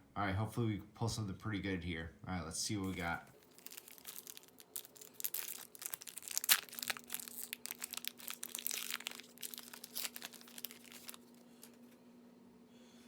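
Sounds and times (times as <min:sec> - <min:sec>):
wrapper tearing and crinkling: 0:03.4 - 0:11.8.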